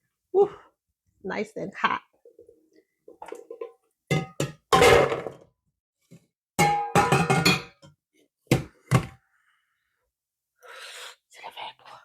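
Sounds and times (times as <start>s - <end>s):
pot and dishes clanking: 3.2s - 5.2s, 6.6s - 7.9s.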